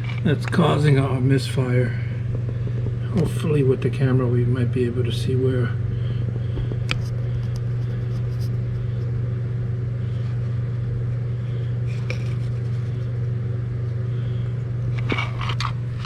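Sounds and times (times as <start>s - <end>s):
air pump humming: 0.0s - 16.0s.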